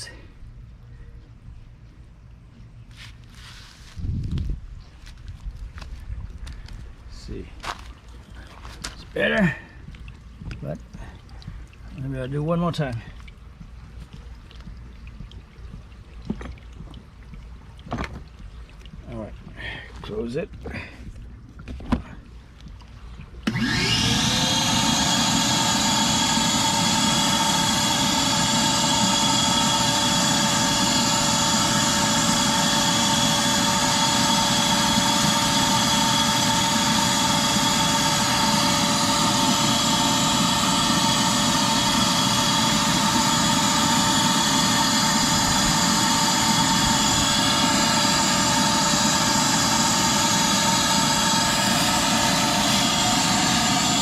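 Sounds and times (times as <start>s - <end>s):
vacuum motor whining: 23.4s - 54.0s.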